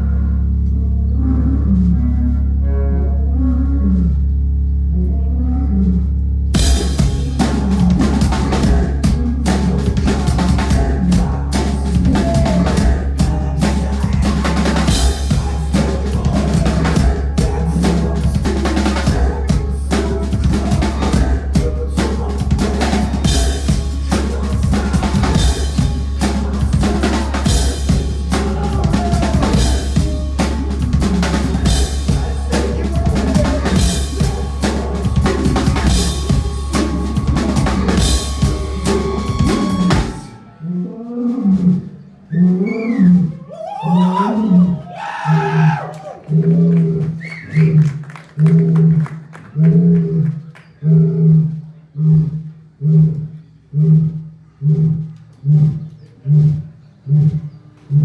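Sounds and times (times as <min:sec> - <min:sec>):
heavy bass: 0:00.0 - 0:58.0
fast drum kit playing: 0:06.6 - 0:40.4
live band music: 0:06.6 - 0:40.4
voices shouting: 0:06.6 - 0:40.5.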